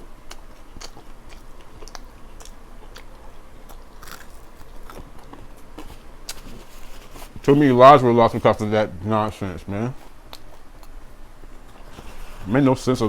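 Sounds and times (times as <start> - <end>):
person chewing fried chicken: 0.0 - 7.4, 9.8 - 12.2.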